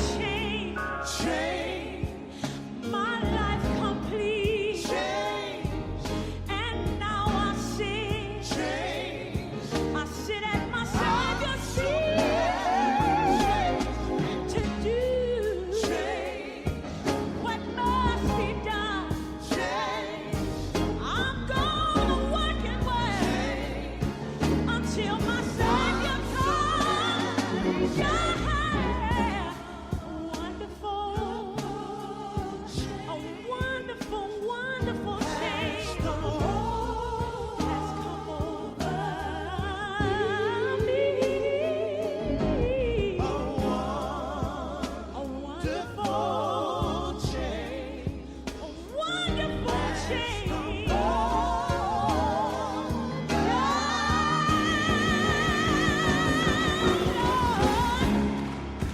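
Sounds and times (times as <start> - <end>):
regular drum beat: 0.0 - 58.9
vocals with heavy vibrato: 0.0 - 58.9
deep bass line: 20.3 - 31.4, 34.9 - 58.9.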